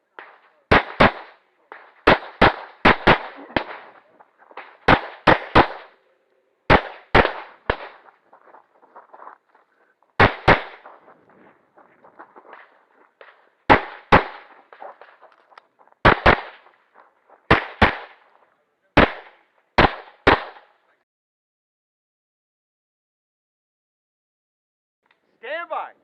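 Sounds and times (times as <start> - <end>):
pistol shots: 0.0 - 6.0, 6.7 - 9.3, 10.2 - 18.4, 19.0 - 20.8
faint movement noise: 3.8 - 4.8, 7.5 - 10.2, 10.8 - 13.7.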